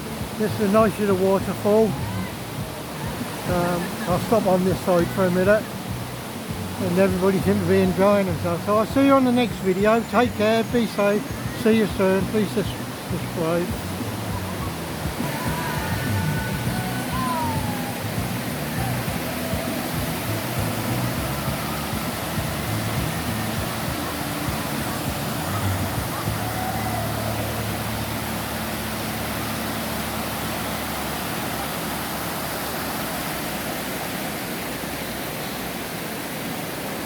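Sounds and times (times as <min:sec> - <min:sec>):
waterfall rushing: 0:00.0 - 0:37.0
faint voices: 0:00.3 - 0:05.9, 0:06.7 - 0:28.9.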